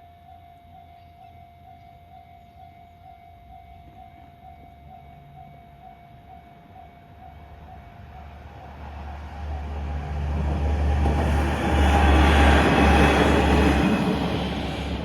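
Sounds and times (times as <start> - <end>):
level crossing warning bell: 0.0 - 10.0
diesel railcar engine rumble: 0.0 - 15.0
train wheel noise: 6.6 - 15.0.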